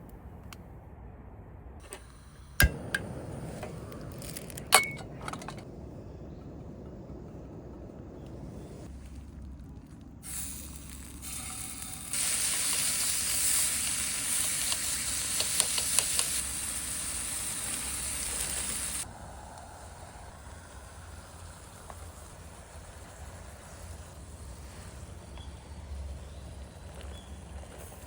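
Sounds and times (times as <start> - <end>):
sharp pops: 1.8 - 4.8
food sizzling in a frying pan: 10.3 - 19.0.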